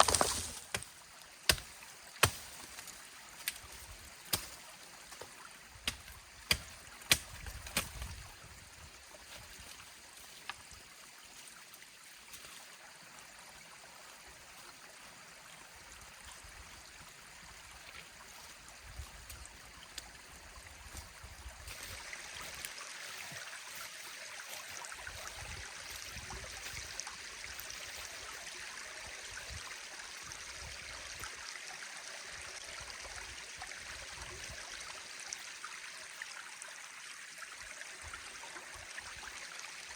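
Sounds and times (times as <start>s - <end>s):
stream flowing over stones: 0.0s - 39.9s.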